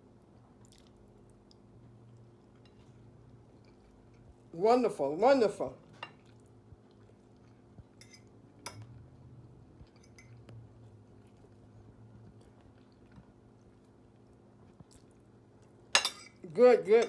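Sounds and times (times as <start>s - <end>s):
faint chewing of food: 0.0s - 4.5s, 5.8s - 16.4s.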